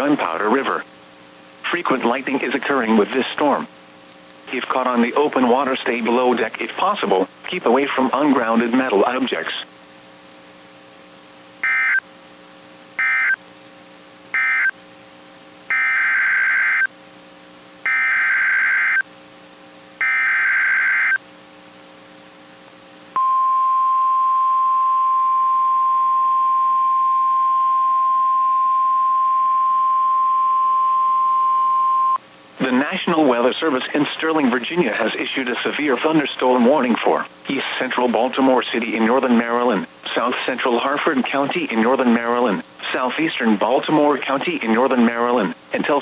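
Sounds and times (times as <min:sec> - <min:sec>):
data tone bursts: 0:11.6 - 0:12.0, 0:15.7 - 0:16.9, 0:17.9 - 0:19.0, 0:20.0 - 0:21.2
steady warning alarm tone: 0:11.6 - 0:12.0, 0:13.0 - 0:13.4, 0:14.4 - 0:14.8, 0:15.7 - 0:16.9, 0:17.9 - 0:19.0, 0:20.0 - 0:21.2, 0:23.2 - 0:32.2.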